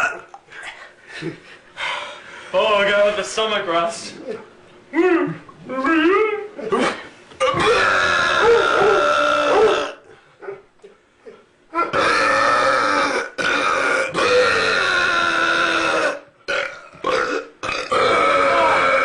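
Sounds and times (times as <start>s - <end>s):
men belching: 6.6s - 10.1s, 11.8s - 19.0s.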